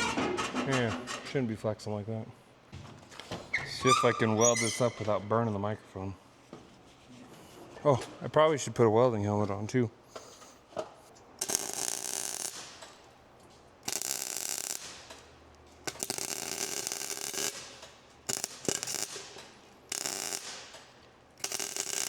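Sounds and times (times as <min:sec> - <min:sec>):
arc welder crackling: 0:11.2 - 0:22.0.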